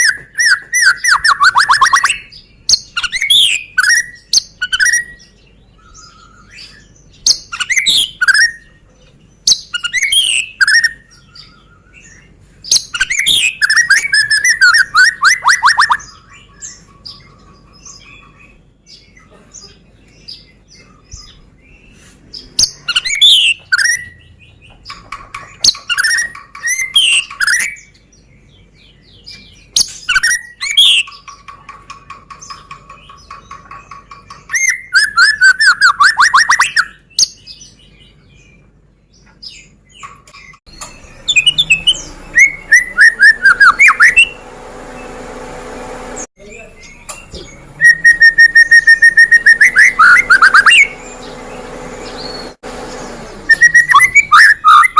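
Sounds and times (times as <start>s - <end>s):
songbird whistling and trilling: 0.0s - 19.1s, 20.2s - 24.4s, 25.5s - 31.4s, 32.5s - 38.6s, 39.3s - 44.4s, 46.8s - 51.4s, 53.5s - 54.9s
bird low buzzing note: 40.7s - 54.9s.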